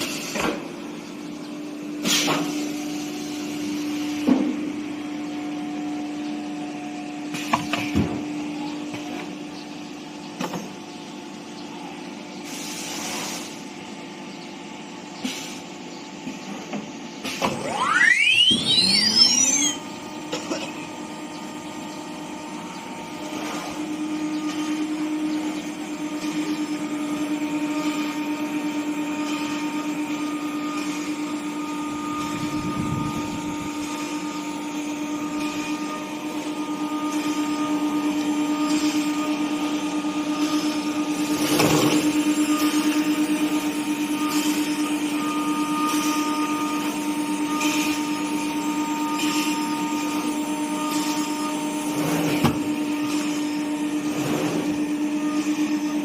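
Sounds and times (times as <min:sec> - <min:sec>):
spindle motor whine spinning up: 0:16.7 - 0:56.0.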